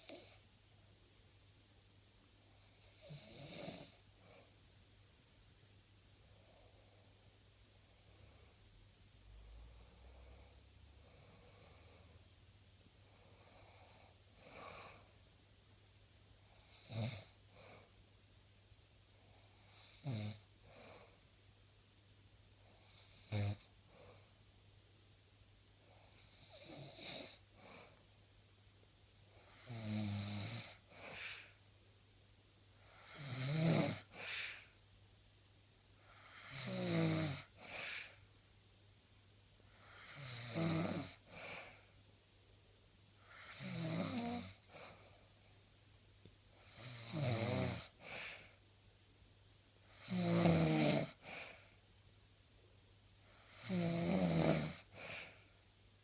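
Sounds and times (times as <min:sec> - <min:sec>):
person snoring: 0:02.6 - 0:04.0, 0:19.5 - 0:20.4, 0:22.8 - 0:23.7, 0:29.4 - 0:31.6, 0:32.9 - 0:34.7, 0:36.1 - 0:38.2, 0:39.8 - 0:41.9, 0:43.2 - 0:45.0, 0:46.6 - 0:48.5, 0:49.9 - 0:51.7, 0:53.2 - 0:55.4
short breath: 0:30.9 - 0:31.6, 0:34.1 - 0:34.8, 0:37.6 - 0:38.3, 0:54.9 - 0:55.6.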